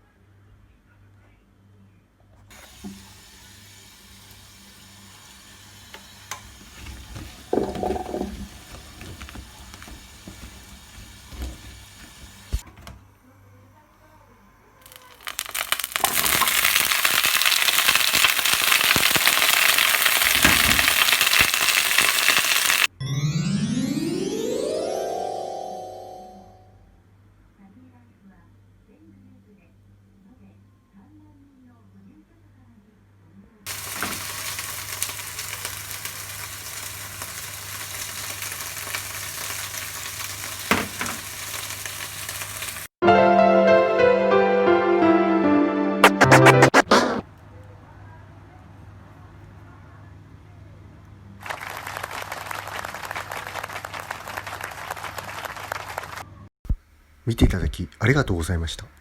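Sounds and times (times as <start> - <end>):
food sizzling and crackling: 2.5 - 12.6, 14.8 - 22.9, 33.7 - 43.0
keyboard music with rising tones: 22.9 - 26.9, 43.0 - 46.9
sharp knock: 46.0 - 47.2.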